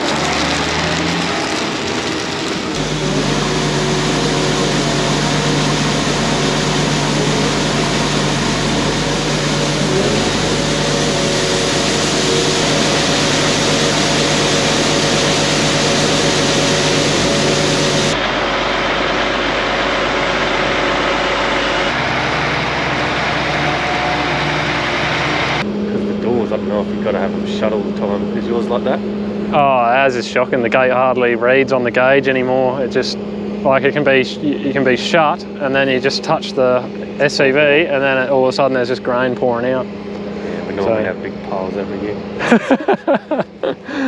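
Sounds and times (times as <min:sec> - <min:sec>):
farm machinery engine running: 0:00.0 - 0:44.0.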